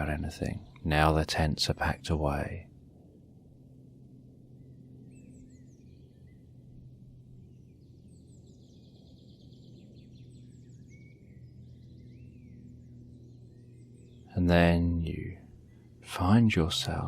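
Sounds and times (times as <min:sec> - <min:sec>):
bird chirping: 0:00.0 - 0:02.9, 0:04.4 - 0:17.0
steady low drone: 0:00.0 - 0:17.0
bird trill: 0:04.4 - 0:17.0.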